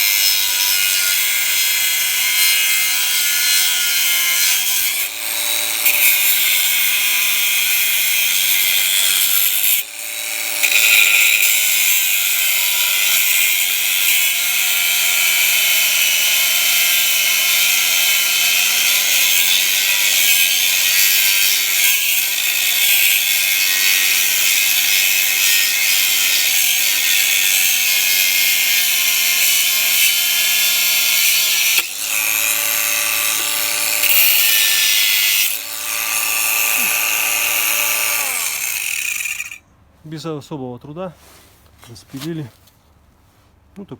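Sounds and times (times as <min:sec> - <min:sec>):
disc grinding steel: 0:00.0 - 0:39.6
angle grinder motor whine: 0:14.5 - 0:39.6.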